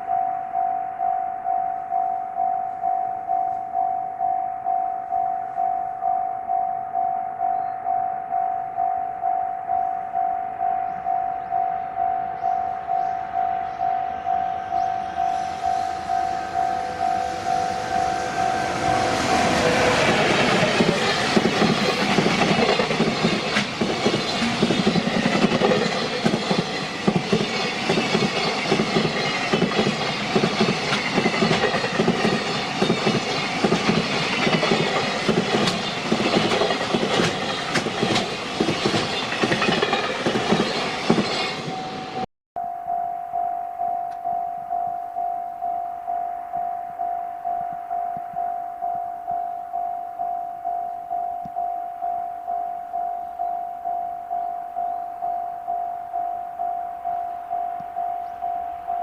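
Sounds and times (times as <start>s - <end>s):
level-crossing warning bell ringing: 0.0s - 59.0s
freight train rumbling: 10.9s - 42.3s
wheels clacking over rail joints: 17.7s - 41.8s.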